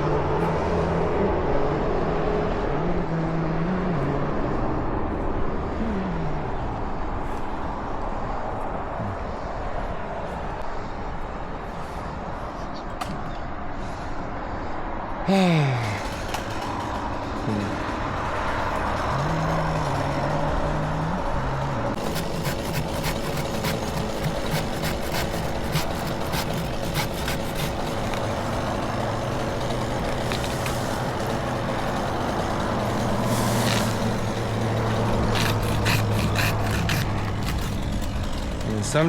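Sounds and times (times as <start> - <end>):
large engine running: 15.3 - 39.0.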